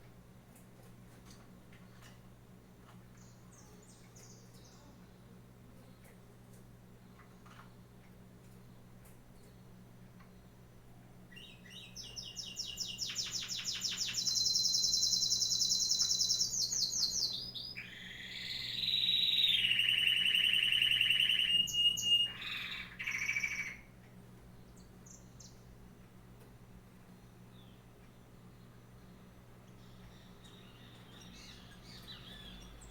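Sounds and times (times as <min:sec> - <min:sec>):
songbird singing rapid trills: 0:03.2 - 0:05.1, 0:11.3 - 0:23.9, 0:24.6 - 0:25.7, 0:27.1 - 0:32.9.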